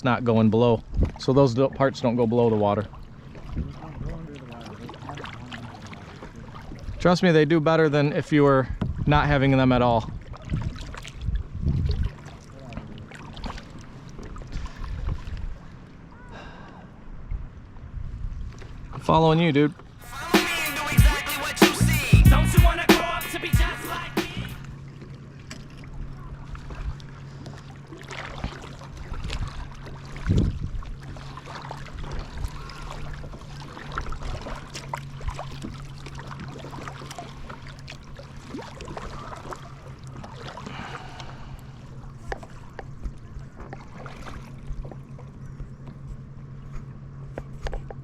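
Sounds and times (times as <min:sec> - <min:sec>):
paddle splashing in water: 0:00.8 - 0:07.0, 0:10.1 - 0:16.1, 0:22.6 - 0:48.0.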